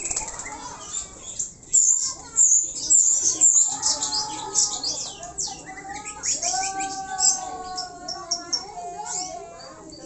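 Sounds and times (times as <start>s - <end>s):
small birds chirping: 0.0s - 10.0s.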